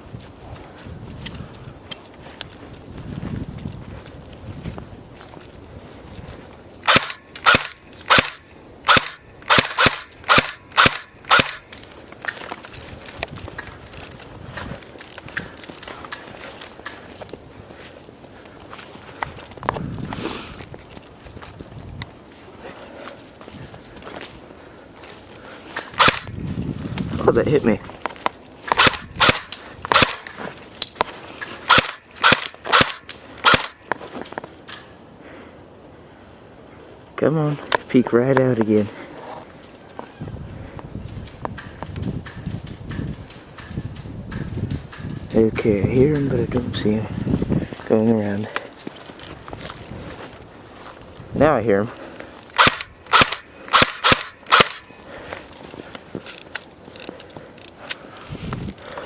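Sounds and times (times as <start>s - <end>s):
airsoft gun shots: 6.8s - 11.8s, 25.9s - 26.4s, 28.7s - 30.4s, 31.7s - 33.9s, 52.6s - 54.9s.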